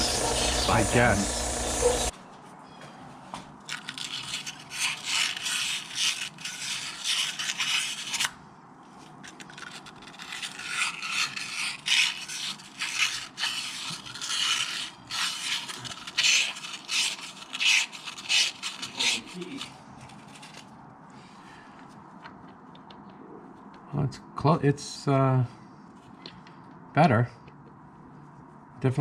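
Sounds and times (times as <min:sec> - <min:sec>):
sanding with coarse abrasive: 0:00.0 - 0:02.1, 0:03.9 - 0:08.3, 0:09.6 - 0:20.6.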